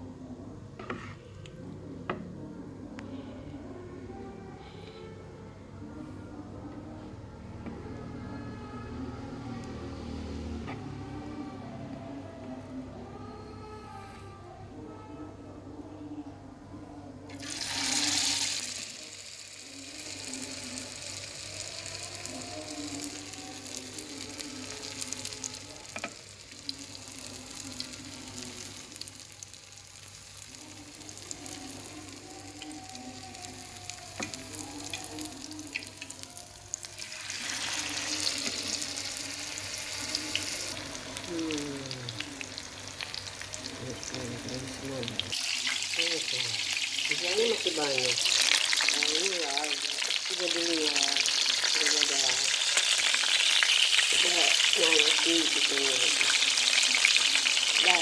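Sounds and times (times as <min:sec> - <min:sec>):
tofu deep-frying in hot oil: 0:17.3 - 0:58.0.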